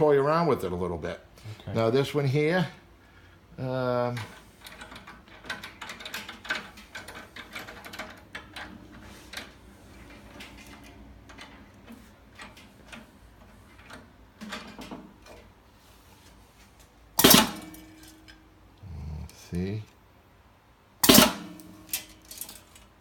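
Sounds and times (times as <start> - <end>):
light metallic clicks and rattles: 4.1 - 15.6, 21.0 - 23.0
crimper closing with sharp clack: 17.2 - 18.1, 21.0 - 22.2.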